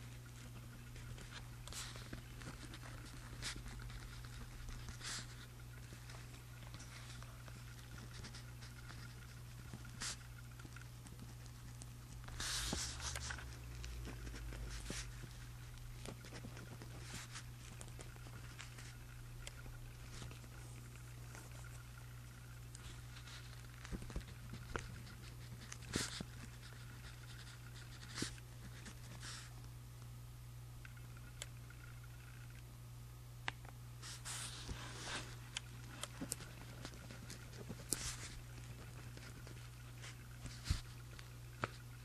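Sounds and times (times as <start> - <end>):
small ticks: 0.0 - 29.0, 30.8 - 32.7
steady low hum: 0.0 - 42.0.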